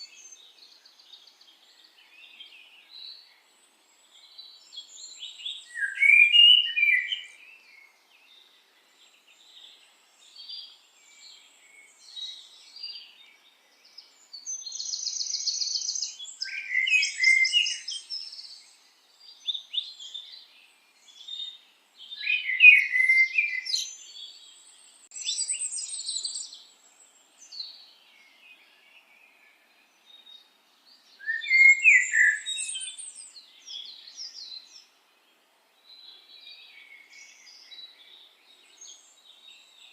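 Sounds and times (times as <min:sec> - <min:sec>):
bird chirping and trilling: 0:05.1 - 0:07.4, 0:14.6 - 0:18.5, 0:22.1 - 0:24.0, 0:25.1 - 0:26.5, 0:31.2 - 0:34.6.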